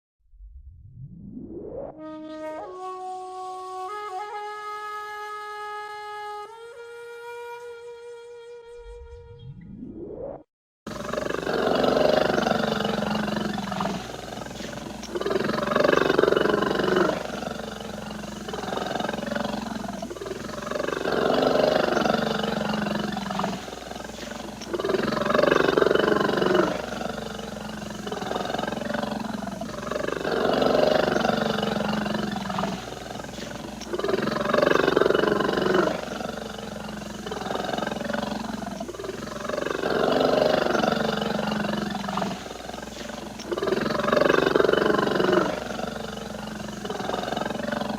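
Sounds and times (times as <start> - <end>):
polar bear purring: 10.9 - 47.9.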